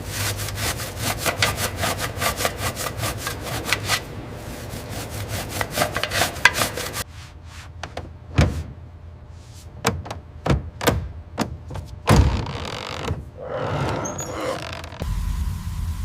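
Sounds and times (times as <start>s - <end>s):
rough scraping: 0.0s - 7.1s
low rumble: 14.8s - 16.0s.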